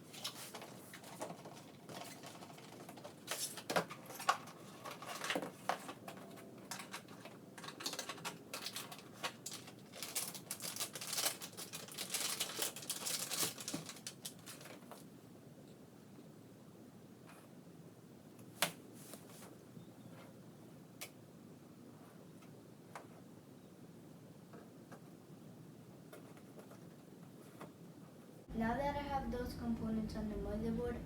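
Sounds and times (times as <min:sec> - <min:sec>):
small clicks taps and rustles: 0:00.2 - 0:15.1, 0:26.0 - 0:28.2.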